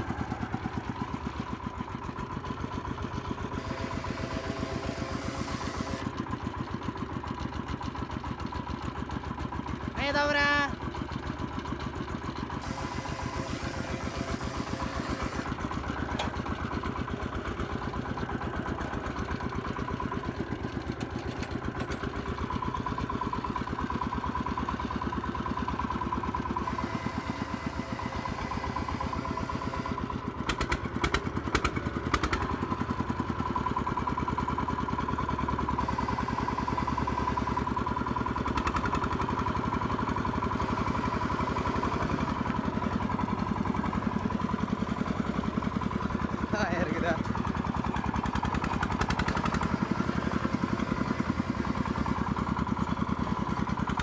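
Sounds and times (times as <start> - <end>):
farm cart engine chugging: 0.0 - 54.0
steady whine: 3.6 - 6.1, 12.6 - 15.5, 26.6 - 30.0, 35.8 - 37.7, 40.5 - 43.1, 49.3 - 52.2.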